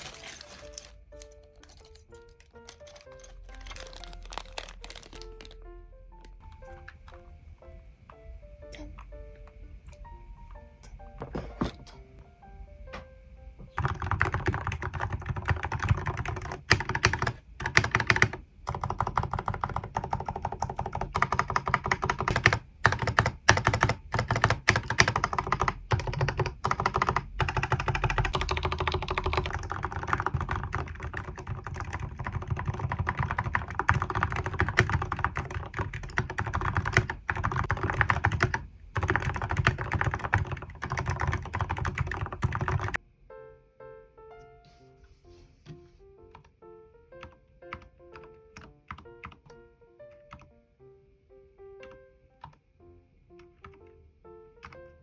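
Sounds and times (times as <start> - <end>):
mechanical keyboard typing: 0.8 - 5.6, 13.8 - 43.0, 47.2 - 49.6, 54.6 - 54.9.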